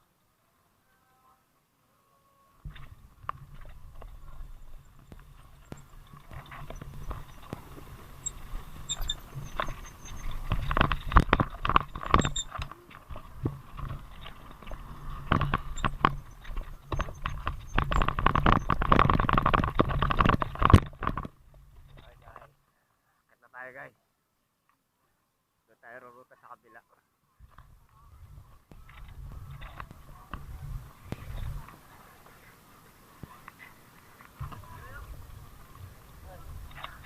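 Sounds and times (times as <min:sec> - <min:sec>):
bike rattling over rough road: 0:02.6 - 0:22.5, 0:27.5 - 0:37.0.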